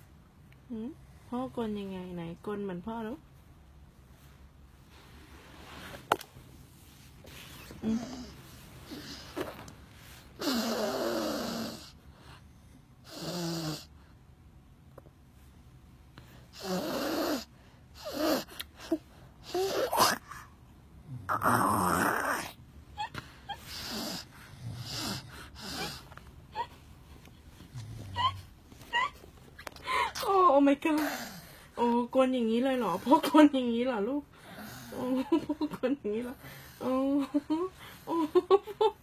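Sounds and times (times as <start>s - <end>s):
person snoring: 10.4s - 12.0s, 16.6s - 18.5s, 21.1s - 22.6s, 23.7s - 26.0s.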